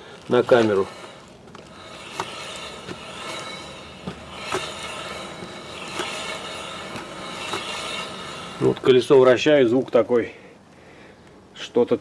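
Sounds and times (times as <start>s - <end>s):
brake pad rubbing on disc: 0.3s - 9.4s.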